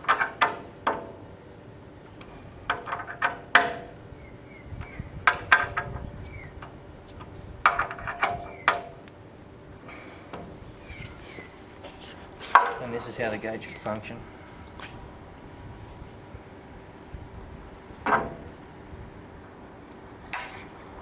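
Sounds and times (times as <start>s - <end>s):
hand tool clicking on metal hinge: 0.0s - 1.2s, 2.2s - 4.0s, 4.8s - 9.1s.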